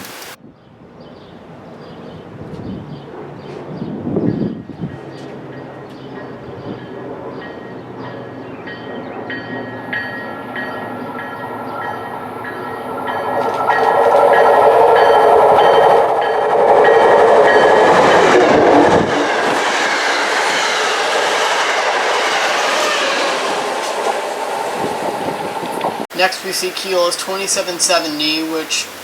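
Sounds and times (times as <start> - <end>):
train wheels clattering on rails: 4.8 - 26.0.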